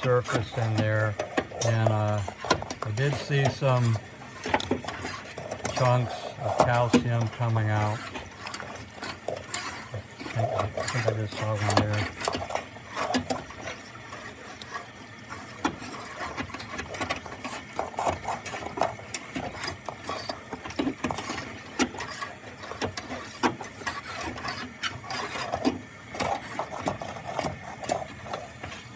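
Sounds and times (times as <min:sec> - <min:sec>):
rod scraping inside metal tank: 0:00.0 - 0:28.9.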